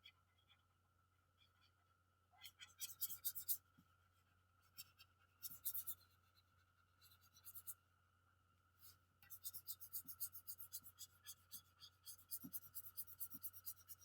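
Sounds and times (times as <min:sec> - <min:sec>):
faint steady hum: 0:00.0 - 0:14.0
drawing strokes scratching: 0:02.7 - 0:03.6, 0:04.7 - 0:06.4, 0:07.0 - 0:07.8, 0:08.8 - 0:14.0.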